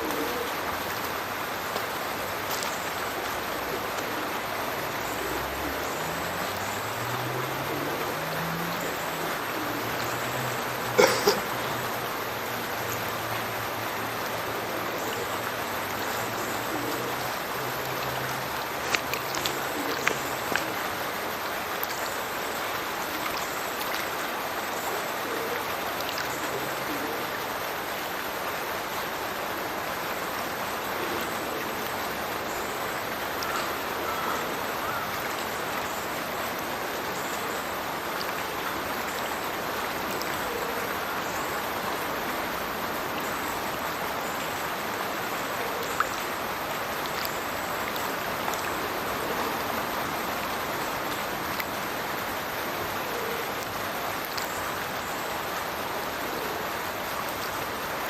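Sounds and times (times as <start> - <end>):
water rushing from culvert: 0.0 - 58.0
sharp water splashes: 17.4 - 24.9.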